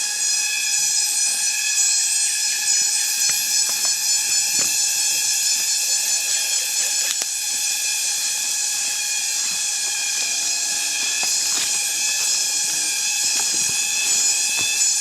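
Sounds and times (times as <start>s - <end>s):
insects chorus: 0.0s - 15.0s
faint clicks: 7.0s - 7.4s.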